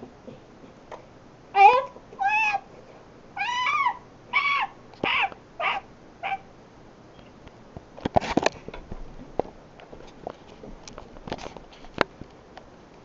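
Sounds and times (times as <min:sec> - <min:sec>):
pet bird squawking: 0:01.6 - 0:02.7, 0:03.4 - 0:06.5
clicks and rustling: 0:07.2 - 0:12.7.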